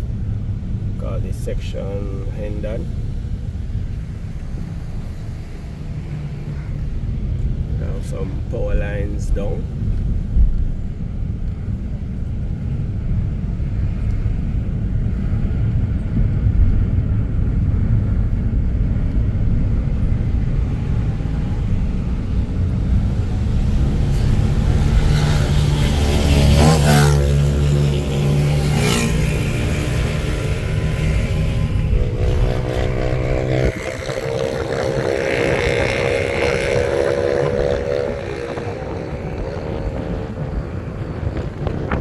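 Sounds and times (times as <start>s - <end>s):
car engine and road rumble: 0.0s - 42.0s
vehicle passing by: 12.4s - 42.0s.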